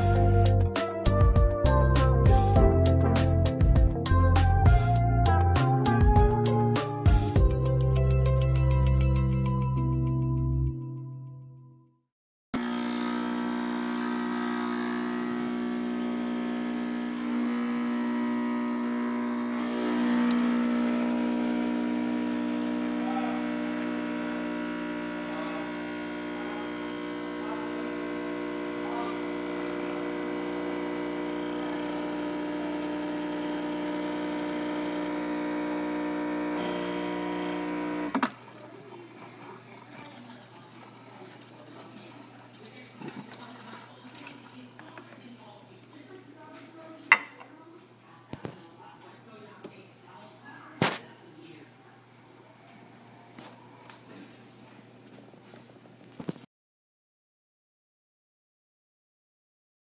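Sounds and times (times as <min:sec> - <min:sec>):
espresso machine pump buzzing: 0:12.6 - 0:45.0.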